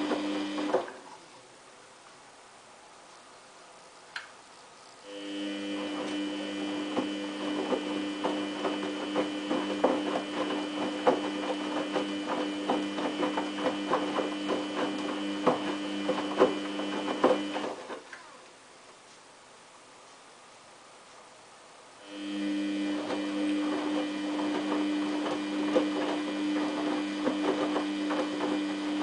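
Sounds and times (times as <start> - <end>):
washing machine motor whine: 0.0 - 1.5, 5.0 - 18.6, 22.0 - 29.0
laundry knocking in drum: 6.9 - 17.8.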